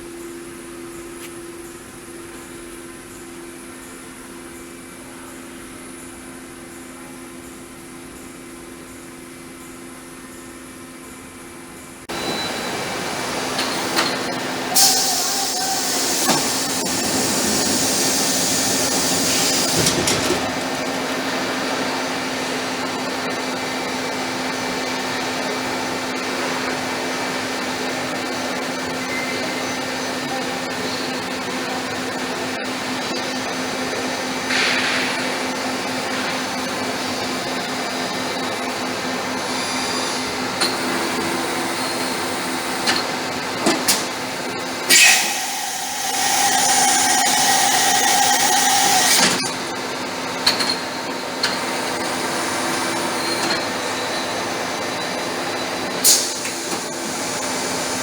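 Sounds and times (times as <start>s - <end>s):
milling machine humming: 12.1s - 30.1s, 36.8s - 58.0s.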